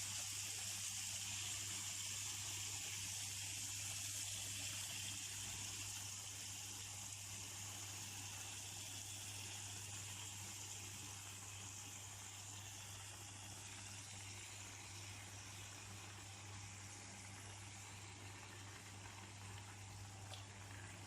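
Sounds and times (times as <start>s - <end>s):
chicken frying in hot oil: 0.0s - 21.0s
low steady hum: 0.0s - 21.0s.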